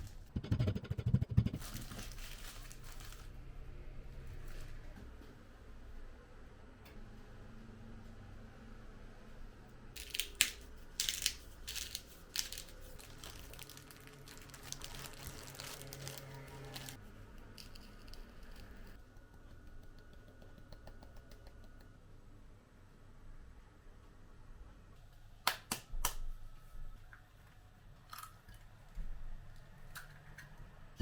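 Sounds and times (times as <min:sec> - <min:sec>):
crinkling and rustling handling: 0:01.6 - 0:03.4, 0:10.0 - 0:18.8.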